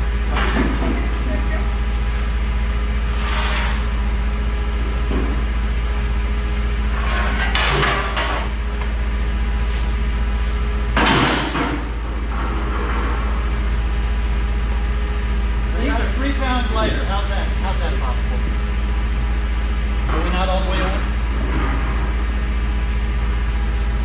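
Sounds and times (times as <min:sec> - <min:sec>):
steady low hum: 0:00.0 - 0:24.0
steel scrap clanking and scraping: 0:06.9 - 0:08.5.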